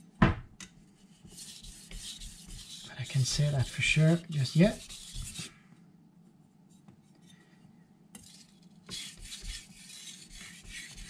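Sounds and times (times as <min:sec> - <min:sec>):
knife scraping on whetstone: 0:01.4 - 0:05.5, 0:08.2 - 0:11.0.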